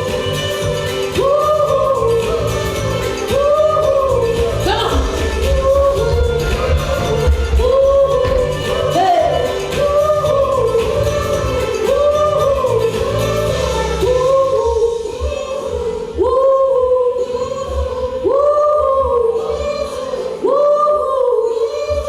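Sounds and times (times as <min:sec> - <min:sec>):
live band music: 0:00.0 - 0:16.0
group of singers holding notes: 0:00.0 - 0:22.0
low bass: 0:03.7 - 0:11.7.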